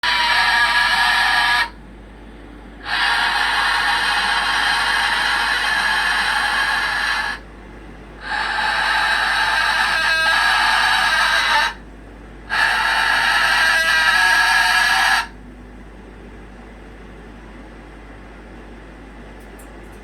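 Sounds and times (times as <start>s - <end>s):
pet's harsh breathy cries: 0.0s - 1.8s, 2.8s - 7.5s, 8.2s - 11.8s, 12.5s - 15.4s.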